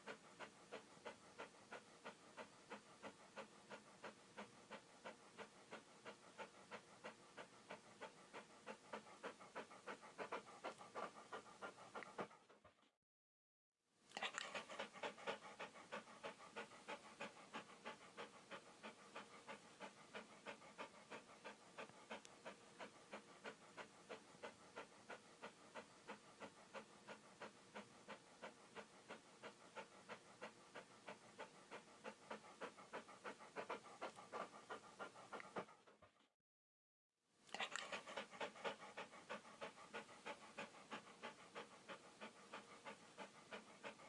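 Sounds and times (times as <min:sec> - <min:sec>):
dog panting: 0:00.0 - 0:13.0, 0:14.1 - 0:36.3, 0:37.5 - 0:44.0.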